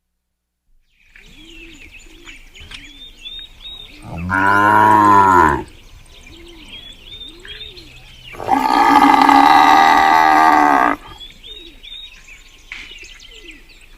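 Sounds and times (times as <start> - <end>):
faint birds chirping: 0.7 - 13.9
cow mooing: 4.1 - 5.7, 8.4 - 11.1.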